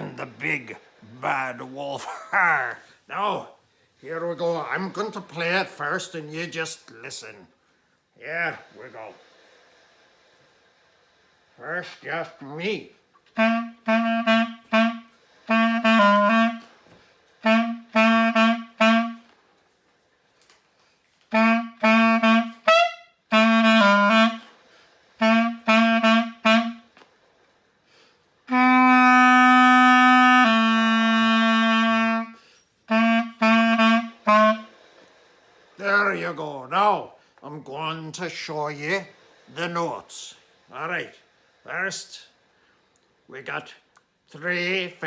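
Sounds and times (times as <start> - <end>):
solo clarinet tune: 13.3 - 16.7, 17.4 - 19.3, 21.3 - 24.5, 25.2 - 26.9, 28.5 - 34.7.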